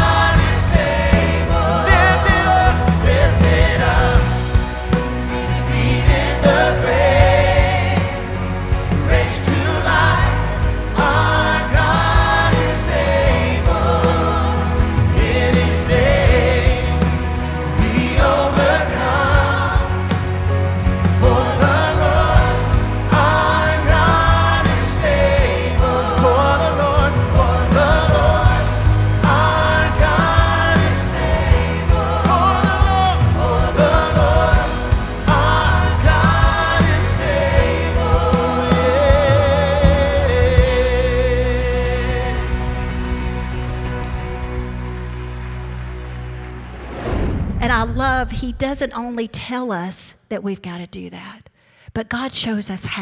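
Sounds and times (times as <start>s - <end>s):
person singing with vibrato: 0.0s - 43.2s
steady bass: 0.0s - 48.8s.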